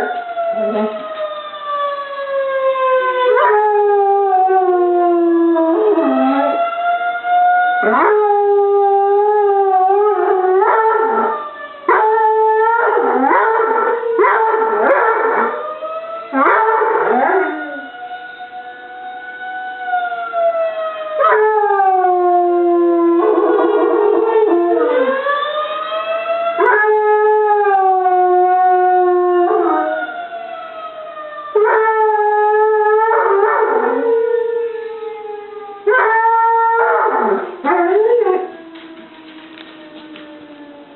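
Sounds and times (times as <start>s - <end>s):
dog howling: 0.0s - 1.0s, 5.6s - 6.6s, 7.8s - 15.6s, 16.3s - 17.9s, 35.9s - 40.8s
wailing siren: 0.0s - 40.9s.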